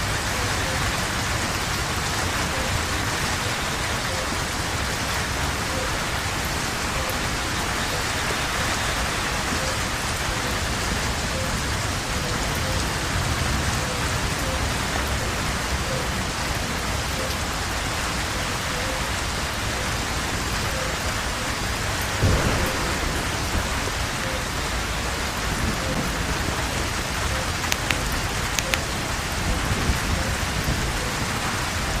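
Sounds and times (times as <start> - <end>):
heavy rain falling: 0.0 - 32.0
sharp drip clicks: 27.6 - 29.0.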